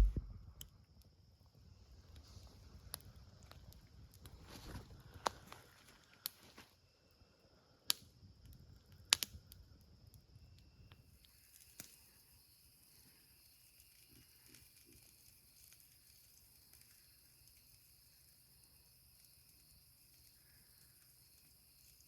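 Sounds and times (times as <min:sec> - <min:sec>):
insects buzzing: 0:10.0 - 0:22.0.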